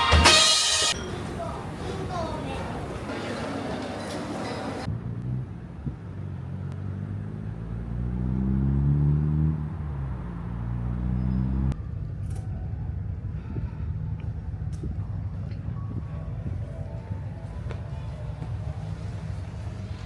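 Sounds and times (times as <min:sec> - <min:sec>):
vehicle engine hum: 0:00.9 - 0:20.0
low rumble: 0:09.6 - 0:20.0.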